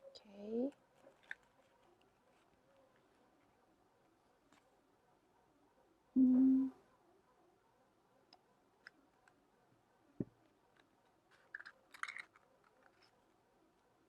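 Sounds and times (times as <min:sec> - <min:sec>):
paper crinkling: 0:11.3 - 0:13.3.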